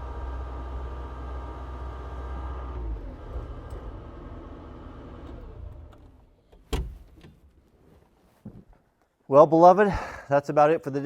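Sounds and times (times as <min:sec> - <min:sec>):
diesel engine running: 0:00.0 - 0:06.2.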